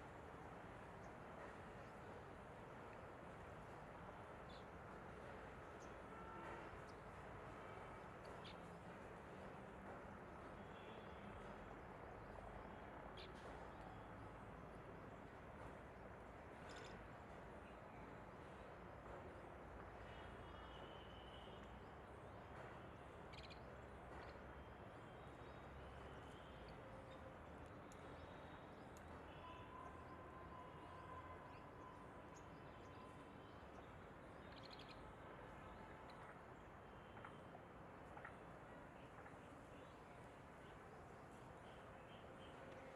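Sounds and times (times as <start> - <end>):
faint steady tone: 19.9 - 42.9
faint bird chirps: 23.3 - 23.6.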